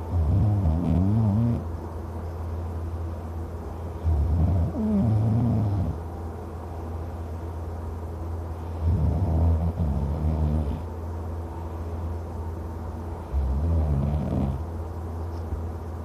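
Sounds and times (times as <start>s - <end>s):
steady low hum: 0.0s - 16.0s
man snoring deeply: 0.1s - 1.6s, 4.0s - 6.0s, 8.8s - 10.9s, 13.3s - 14.6s.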